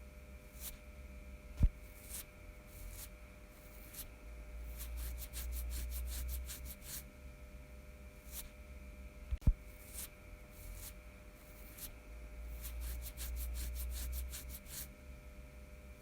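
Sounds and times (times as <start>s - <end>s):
fingernails scratching skin: 2.0s - 4.1s, 4.7s - 7.0s, 9.8s - 11.9s, 12.5s - 14.9s.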